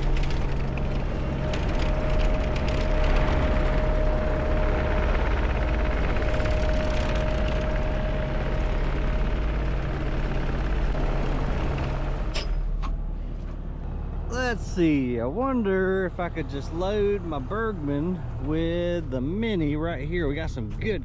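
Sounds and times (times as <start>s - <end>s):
thin whine: 0.0s - 11.0s
diesel engine running: 0.0s - 21.0s.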